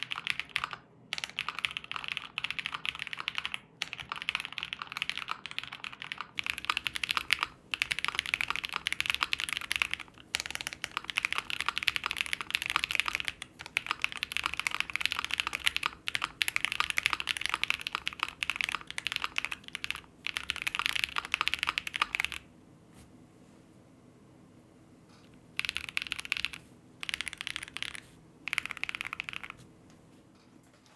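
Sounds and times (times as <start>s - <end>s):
mechanical keyboard typing: 0.0s - 22.5s, 25.5s - 29.7s.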